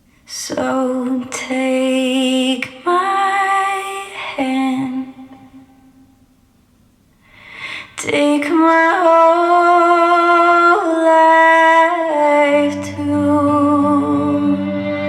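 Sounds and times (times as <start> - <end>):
woman singing long notes: 8.1 - 15.0.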